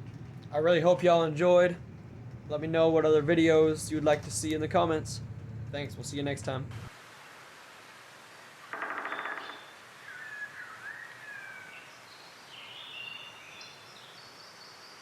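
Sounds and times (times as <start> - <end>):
faint steady hiss: 4.2 - 8.7
birds calling: 9.0 - 11.9.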